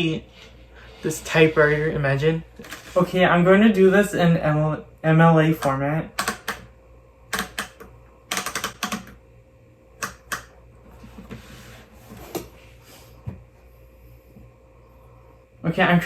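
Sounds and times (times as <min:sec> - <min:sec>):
typewriter mechanical clicks: 0:05.6 - 0:06.7, 0:07.3 - 0:09.2.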